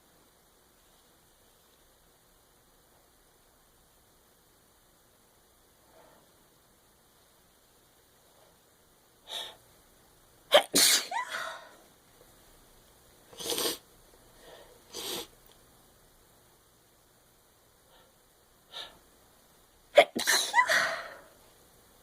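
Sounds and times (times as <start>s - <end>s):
woman sneezing: 10.5s - 11.7s, 20.0s - 21.2s.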